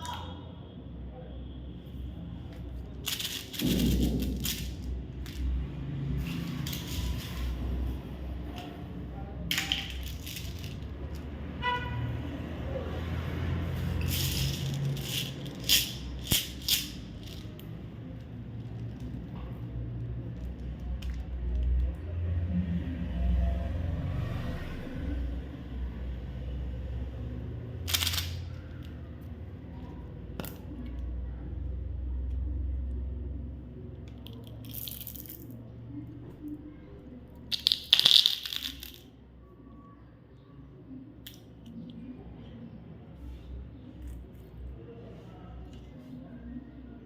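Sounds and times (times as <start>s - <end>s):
candy wrappers crinkling: 2.8s - 5.6s, 6.2s - 8.7s, 9.5s - 11.3s, 13.9s - 19.2s, 27.9s - 28.6s, 34.2s - 35.6s, 37.4s - 39.1s.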